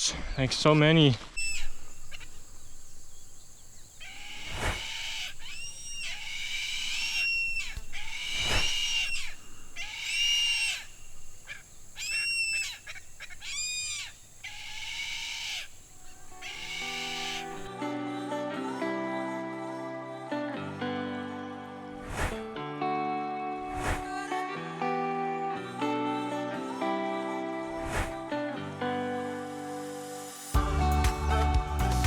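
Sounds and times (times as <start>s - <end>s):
birds squawking: 1.4s - 17.7s.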